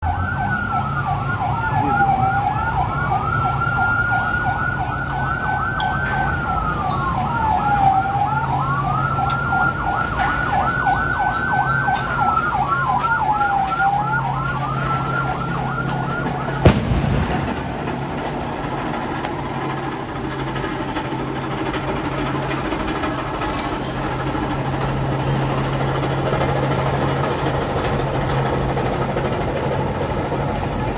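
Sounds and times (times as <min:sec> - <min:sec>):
siren wailing and warbling: 0:00.0 - 0:28.4
heavy engine droning: 0:00.0 - 0:30.9
sharp bang: 0:16.5 - 0:18.8.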